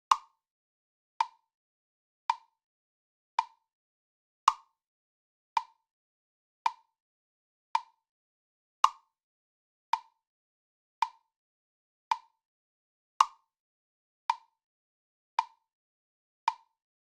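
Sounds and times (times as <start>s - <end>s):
sharp clicks like a metronome: 0.1s - 0.3s, 8.8s - 9.0s, 13.2s - 13.4s.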